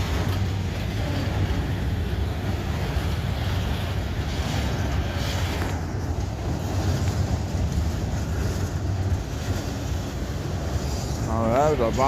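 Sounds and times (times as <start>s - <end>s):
freight cars rumbling past: 0.0s - 12.0s.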